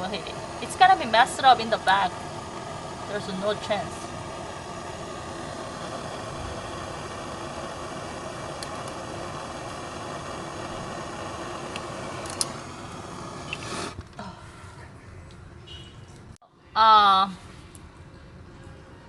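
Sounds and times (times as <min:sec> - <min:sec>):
gas torch hissing: 0:00.0 - 0:14.0.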